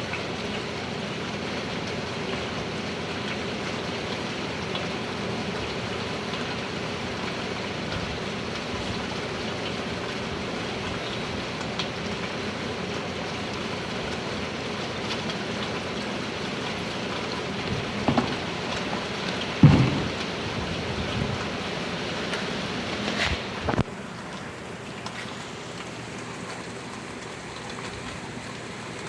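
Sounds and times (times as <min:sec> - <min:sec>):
raindrop ticks: 0:03.1 - 0:21.5
heavy rain hissing: 0:04.3 - 0:24.2.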